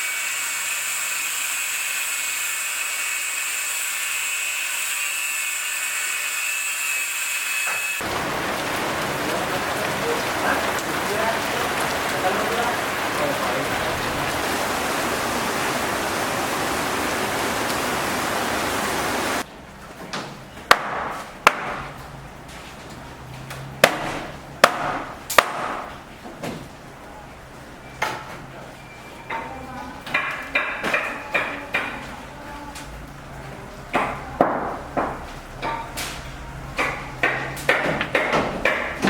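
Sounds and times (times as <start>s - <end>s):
rain hissing: 8.0s - 19.5s.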